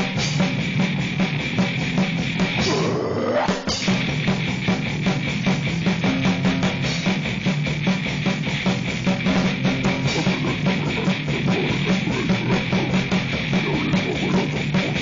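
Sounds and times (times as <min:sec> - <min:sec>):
distorted guitar and bass drone: 0:00.0 - 0:15.0
fast dense drum hits: 0:03.7 - 0:15.0.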